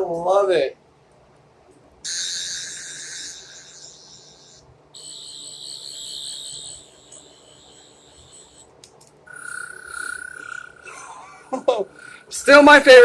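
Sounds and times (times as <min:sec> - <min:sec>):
toy electronic warbling buzz: 0:02.0 - 0:08.7, 0:09.3 - 0:13.0.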